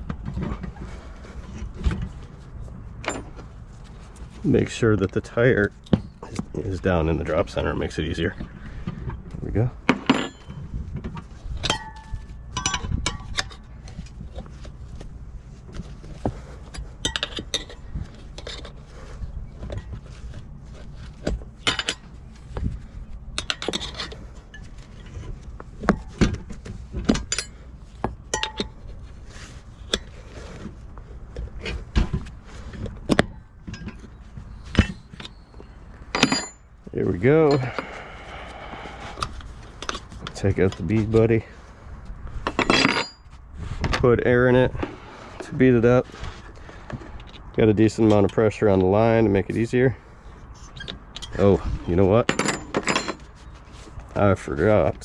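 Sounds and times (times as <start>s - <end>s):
tire spoons clinking on rim: 9.9s - 10.7s, 11.6s - 13.7s, 16.6s - 18.8s, 21.6s - 22.2s, 27.0s - 28.9s, 33.1s - 38.2s, 42.4s - 43.3s, 50.8s - 53.3s.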